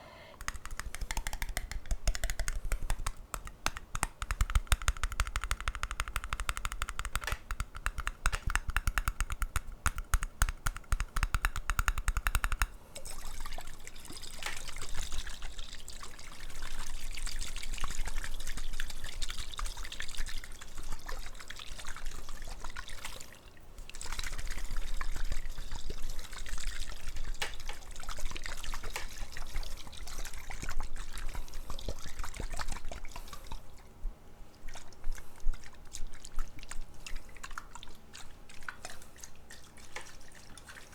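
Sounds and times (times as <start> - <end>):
rapid tapping: 0.4 - 12.7
water pouring into a glass: 13.0 - 18.6.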